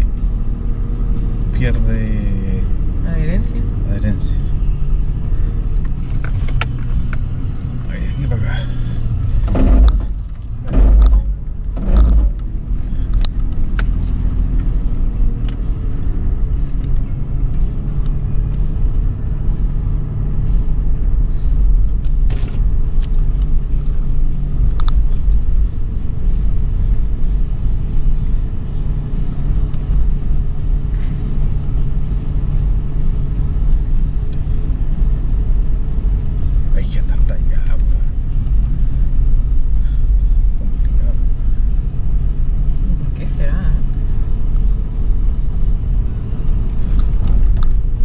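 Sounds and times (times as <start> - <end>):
truck engine rumbling under load: 0.0 - 48.0
heavy thumps: 9.2 - 12.6.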